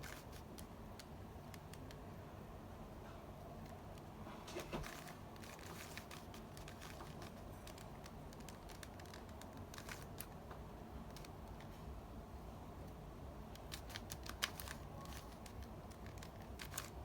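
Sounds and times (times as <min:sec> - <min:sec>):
puzzle cube layers clicking: 0:04.9 - 0:10.4, 0:13.6 - 0:17.0.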